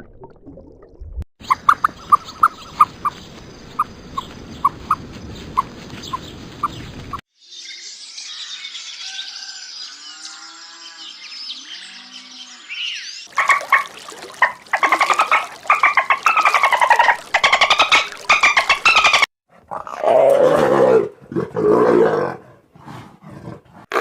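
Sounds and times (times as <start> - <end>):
birds chirping: 1.4 - 19.3.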